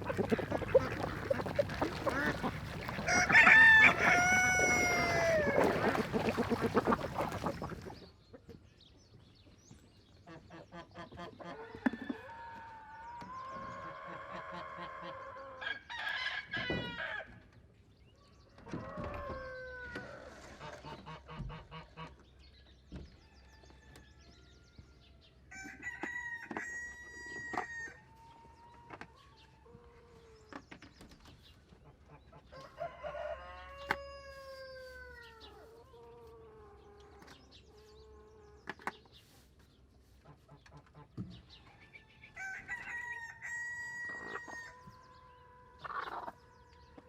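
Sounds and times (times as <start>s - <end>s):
chickens clucking: 0.0s - 8.6s, 31.6s - 47.0s
rooster crowing: 3.0s - 6.0s, 32.7s - 35.2s.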